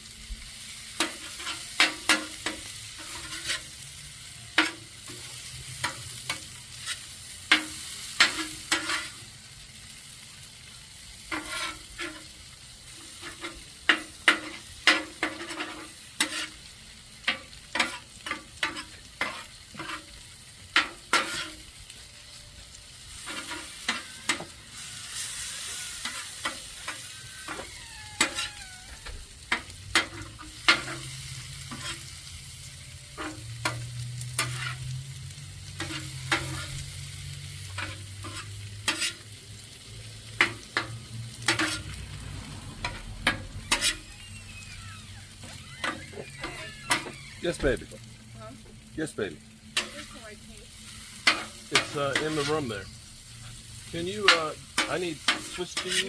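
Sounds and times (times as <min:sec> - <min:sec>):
food sizzling: 0:00.0 - 0:56.0
utensil scraping and clacking: 0:11.3 - 0:12.3, 0:13.1 - 0:16.6, 0:37.7 - 0:39.2, 0:42.8 - 0:44.2, 0:54.2 - 0:56.0.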